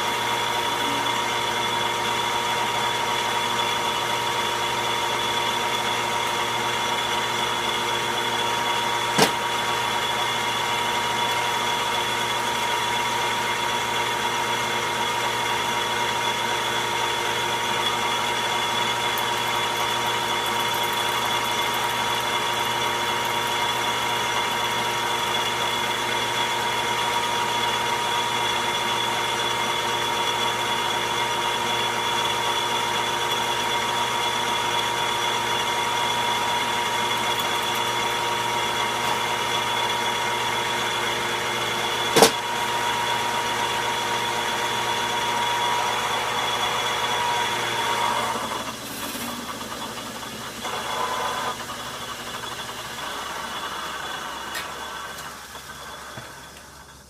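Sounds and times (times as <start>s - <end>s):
lathe humming and whining: 0.0s - 57.0s.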